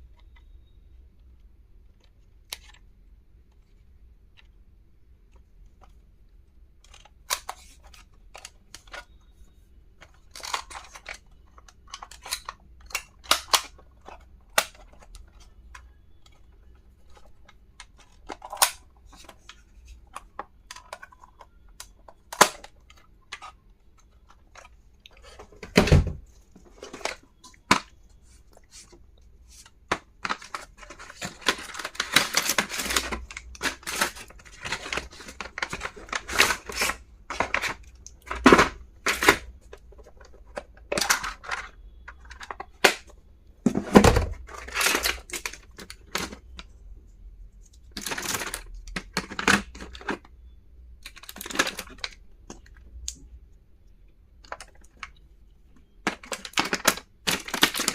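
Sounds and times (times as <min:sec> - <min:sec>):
stationery items clicking: 0:10.0 - 0:46.7, 0:47.7 - 0:50.3, 0:55.8 - 0:57.9
packaging rustling and tearing: 0:29.6 - 0:43.0, 0:43.9 - 0:46.4, 0:47.9 - 0:50.2, 0:56.0 - 0:57.9.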